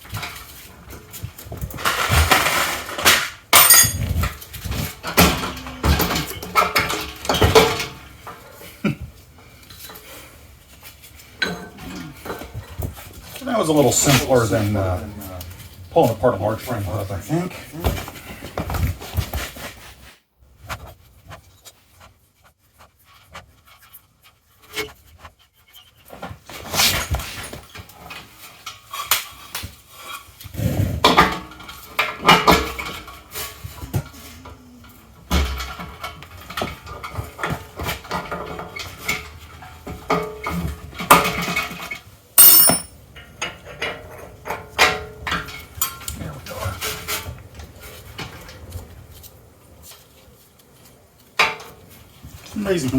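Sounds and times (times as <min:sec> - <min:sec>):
metal tools clinking and rattling: 0:01.8 - 0:04.4, 0:11.4 - 0:12.5, 0:42.4 - 0:43.0
metallic ring: 0:03.6 - 0:04.1, 0:42.4 - 0:43.0.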